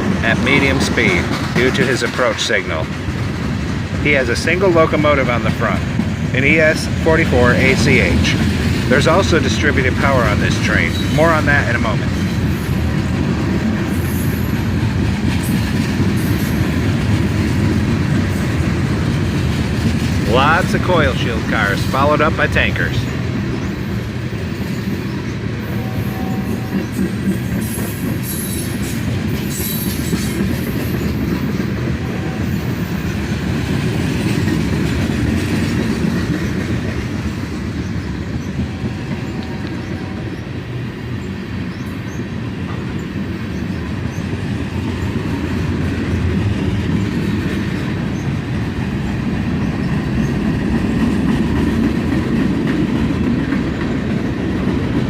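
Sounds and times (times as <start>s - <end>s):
freight train rumbling on rails: 0.0s - 55.0s
high wheel squeals: 24.8s - 31.2s.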